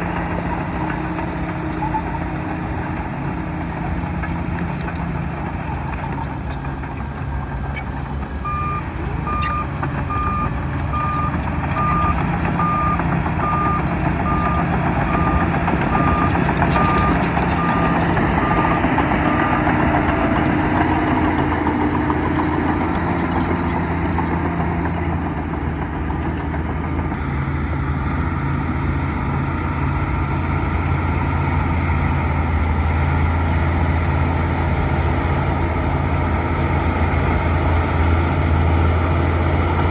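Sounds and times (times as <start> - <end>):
diesel engine running: 0.0 - 39.9
reversing alarm beeping: 8.4 - 19.8.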